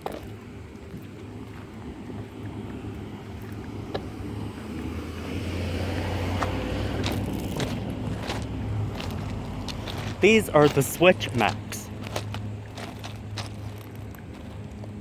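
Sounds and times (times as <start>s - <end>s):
vehicle driving past: 3.1s - 10.8s.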